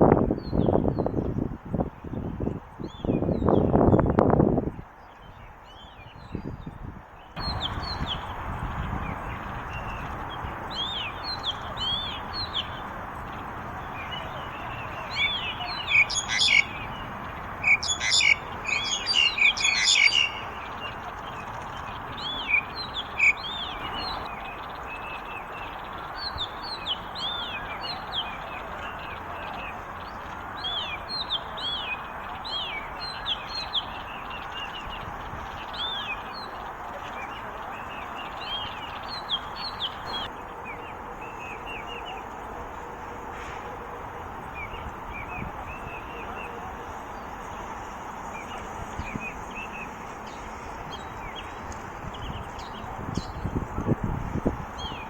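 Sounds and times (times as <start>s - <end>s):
small birds chirping: 7.2s - 42.3s.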